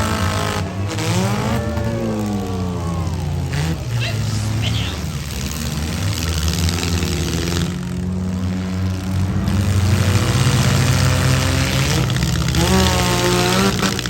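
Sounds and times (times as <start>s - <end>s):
car engines revving hard: 0.0s - 14.0s.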